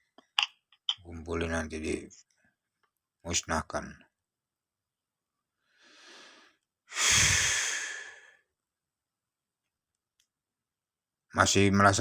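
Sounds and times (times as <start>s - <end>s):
person breathing in softly: 5.6s - 8.4s
long heavy sigh: 6.0s - 8.4s.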